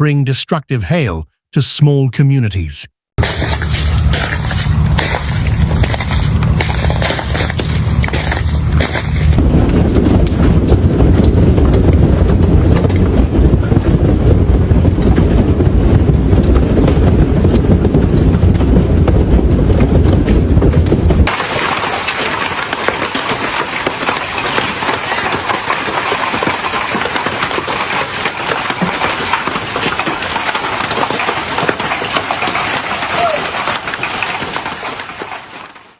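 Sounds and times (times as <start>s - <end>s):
rain and hail pelting down: 3.2s - 9.4s, 21.2s - 35.9s
wind buffeting microphone: 3.2s - 35.4s.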